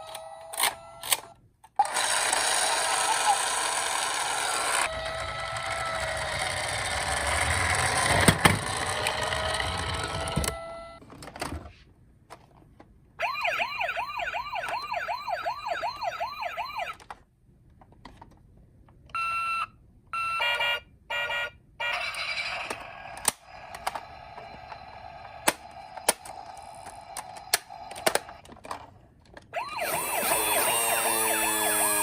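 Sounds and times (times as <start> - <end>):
toy car rolling rumble: 1.8 - 10.5
toy electronic siren wailing: 1.9 - 7.5, 13.2 - 17.0, 20.2 - 28.0, 29.6 - 32.0.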